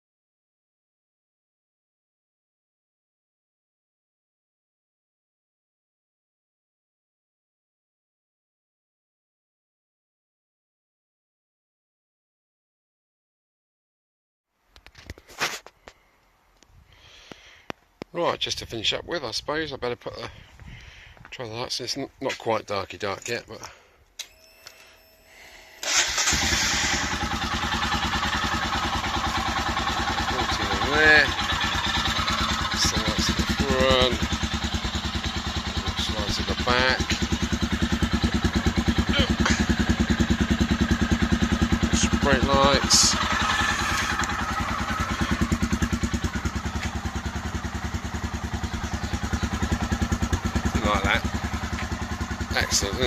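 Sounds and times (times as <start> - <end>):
faint steady whine: 24.1 - 25.8
motorcycle engine starting: 25.0 - 53.0
motorcycle engine idling: 25.8 - 53.0.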